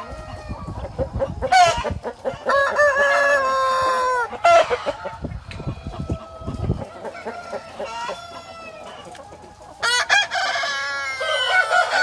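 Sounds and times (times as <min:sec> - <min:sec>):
chickens clucking: 0:00.0 - 0:12.0
rooster crowing: 0:09.8 - 0:12.0.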